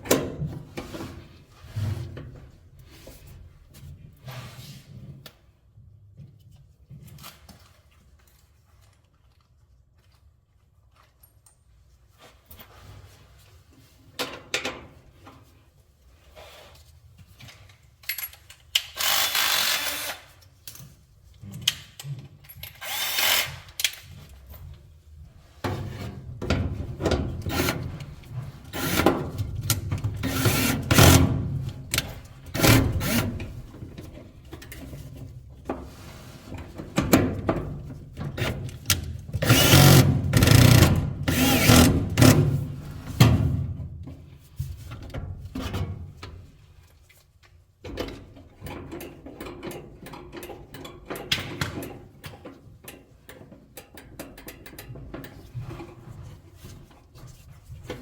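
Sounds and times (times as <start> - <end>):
rubbing and scraping of parts: 12.2 - 58.0
power drill-driver bursts: 19.0 - 20.3, 22.8 - 23.7, 39.4 - 41.9.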